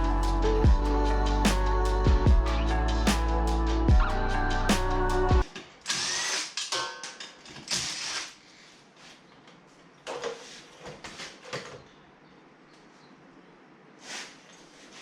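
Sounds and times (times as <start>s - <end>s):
power tool bursts: 5.8s - 6.7s.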